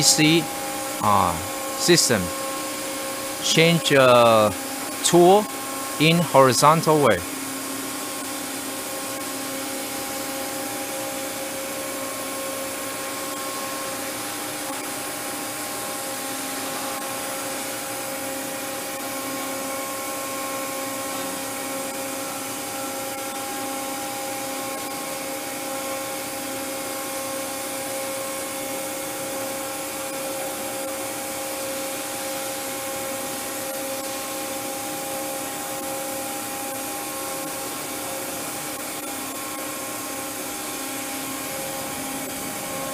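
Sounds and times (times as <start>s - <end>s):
machining center humming: 0.0s - 7.3s.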